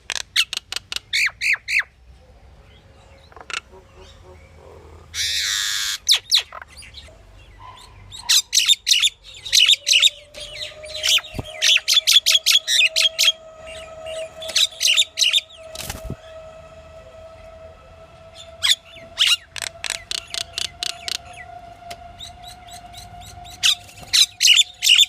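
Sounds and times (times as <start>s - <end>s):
bird screeching: 0.4s - 1.9s, 3.2s - 25.0s.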